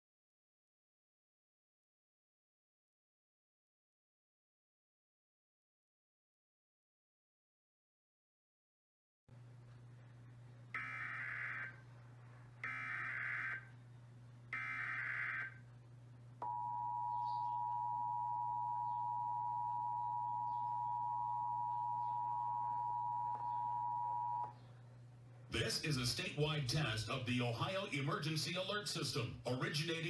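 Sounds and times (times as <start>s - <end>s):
low hum: 9.3s - 28.1s
data tone bursts: 16.4s - 24.5s
two-tone attention signal: 16.4s - 24.5s.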